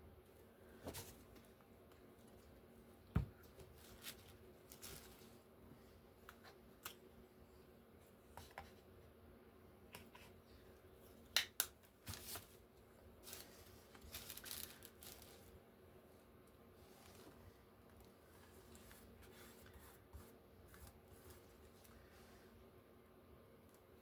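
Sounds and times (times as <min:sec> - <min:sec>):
paper rustling: 0:13.2 - 0:15.6.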